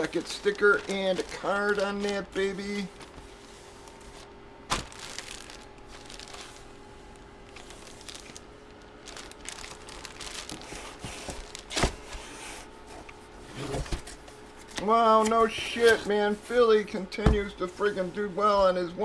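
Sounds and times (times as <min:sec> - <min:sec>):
plastic packaging crinkling: 0:00.0 - 0:12.0.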